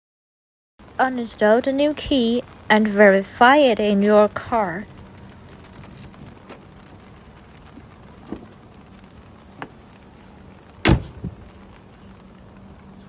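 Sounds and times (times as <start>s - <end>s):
low steady hum: 0.8s - 13.0s
sharp knock: 10.9s - 11.4s.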